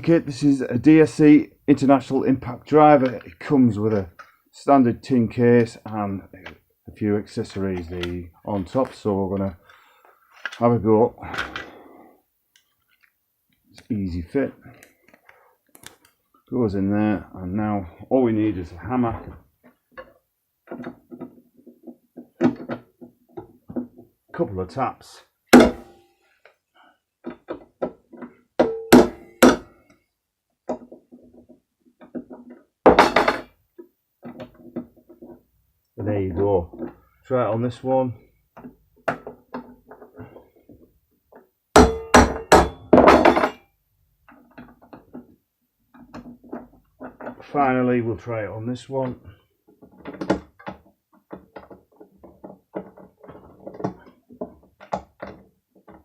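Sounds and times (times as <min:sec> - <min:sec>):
knocks: 0:28.6 - 0:29.7.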